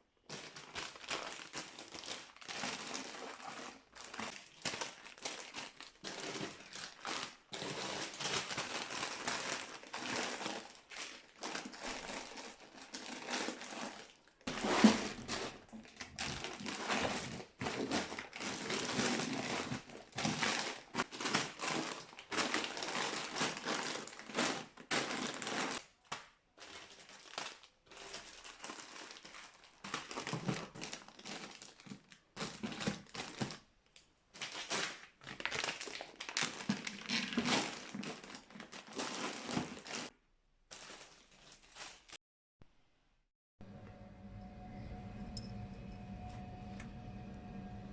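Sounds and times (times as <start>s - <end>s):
packaging crinkling and rustling: 0.1s - 40.1s, 40.7s - 42.2s.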